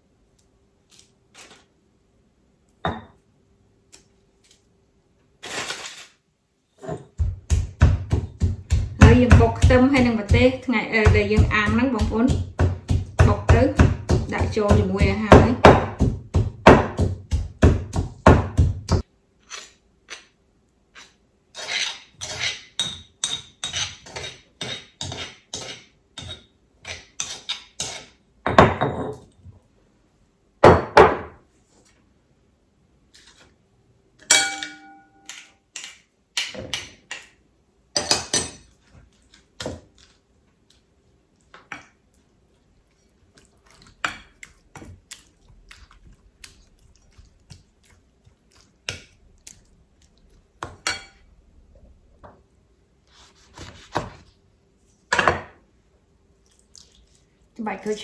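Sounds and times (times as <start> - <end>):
utensils knocking: 7.2 - 19.0
dish clinking: 34.3 - 35.3.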